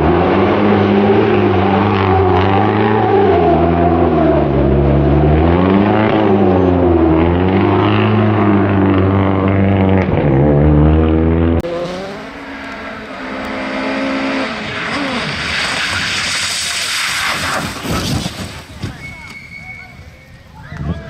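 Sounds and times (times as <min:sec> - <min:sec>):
rally car engine revving hard: 0:00.0 - 0:16.2
steady car engine note: 0:00.0 - 0:16.3.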